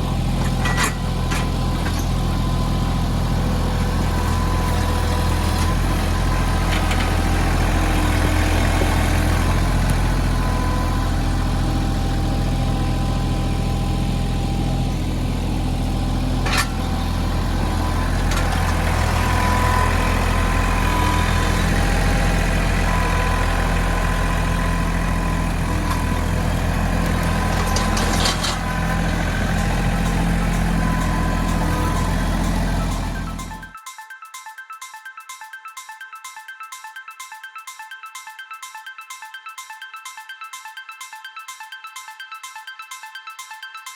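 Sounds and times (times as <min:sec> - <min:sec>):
tractor diesel engine running: 0:00.0 - 0:33.8.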